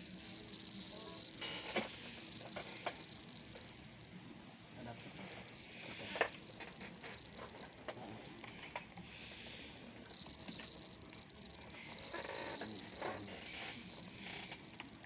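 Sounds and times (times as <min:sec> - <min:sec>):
faint high whine: 0:00.0 - 0:08.8, 0:09.8 - 0:15.0
light clicks and scratching: 0:05.0 - 0:09.1, 0:10.1 - 0:15.0.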